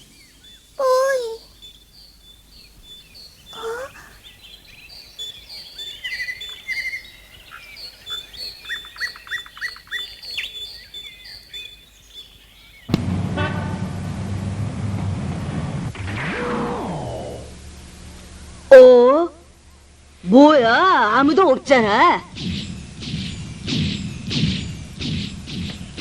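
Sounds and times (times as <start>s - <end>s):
birds chirping and twittering: 0.0s - 13.0s, 21.2s - 26.0s
steady low hum: 13.0s - 26.0s.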